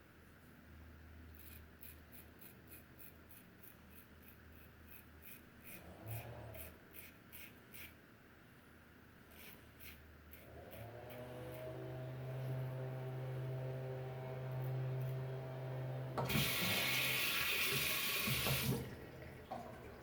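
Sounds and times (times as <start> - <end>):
razor scraping stubble: 1.4 - 8.0, 9.3 - 12.6.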